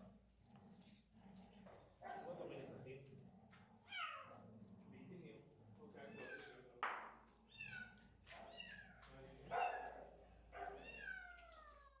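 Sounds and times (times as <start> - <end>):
kittens meowing: 7.5 - 9.0, 10.7 - 12.0.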